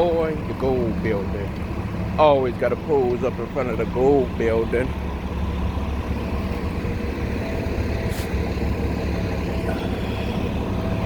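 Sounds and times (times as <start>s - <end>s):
traffic rumble: 0.0s - 11.0s.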